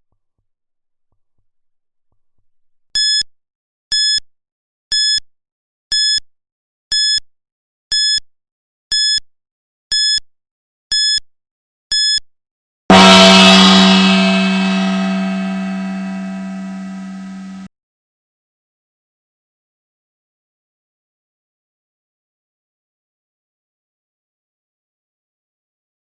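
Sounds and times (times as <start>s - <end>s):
loud gong ringing: 12.9s - 17.7s.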